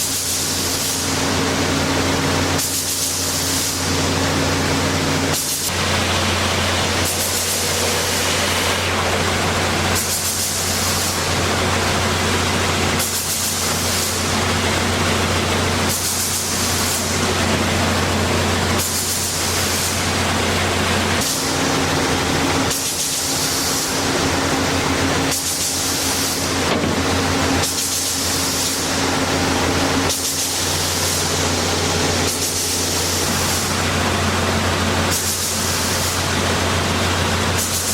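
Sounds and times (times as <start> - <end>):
belt sander hiss: 0.0 - 37.9.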